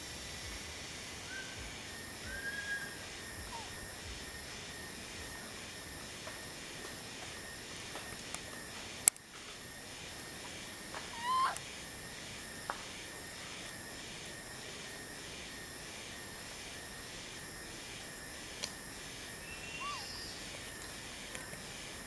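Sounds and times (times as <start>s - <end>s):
high pulsing chorus: 0.0s - 7.2s
rising animal call: 2.3s - 3.9s, 11.1s - 11.6s, 19.7s - 20.3s.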